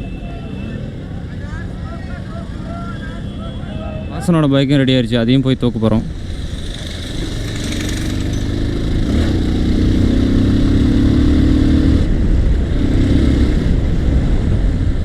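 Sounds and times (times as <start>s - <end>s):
motorcycle engine running: 6.1s - 15.0s.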